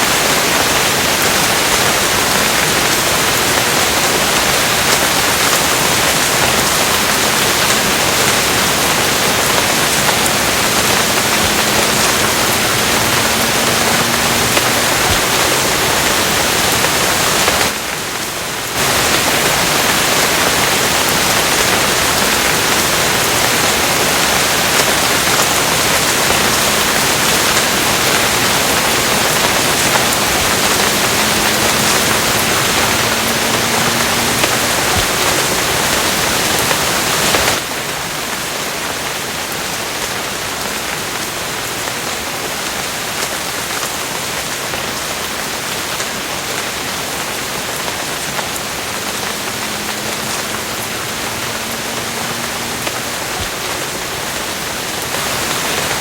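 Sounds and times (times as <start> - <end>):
heavy rain: 0.0 - 56.0.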